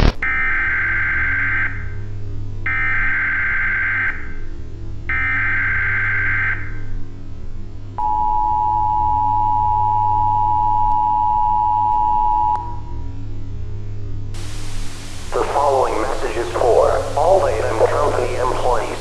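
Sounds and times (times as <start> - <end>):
low hum: 7.2 - 19.0.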